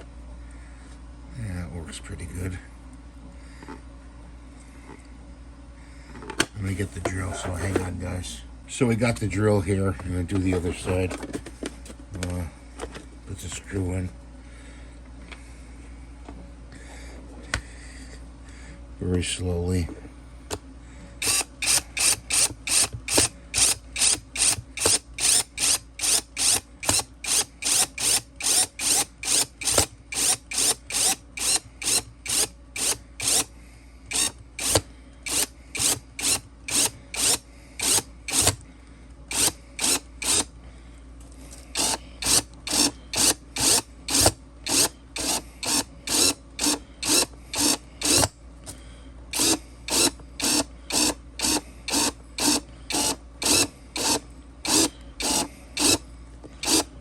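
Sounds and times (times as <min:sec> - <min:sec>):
cordless drill driving screw: 0:21.2 - 0:33.5, 0:34.1 - 0:38.6, 0:39.3 - 0:40.5, 0:41.7 - 0:48.3, 0:49.3 - 0:56.0, 0:56.6 - 0:56.9.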